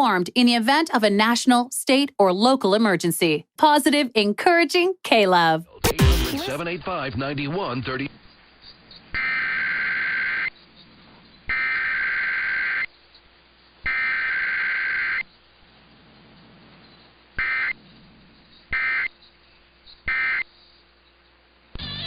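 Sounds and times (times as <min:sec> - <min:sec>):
harsh buzzing data bursts: 0:05.8 - 0:06.6, 0:07.5 - 0:10.6, 0:11.4 - 0:15.6, 0:17.2 - 0:17.8, 0:18.4 - 0:22.0.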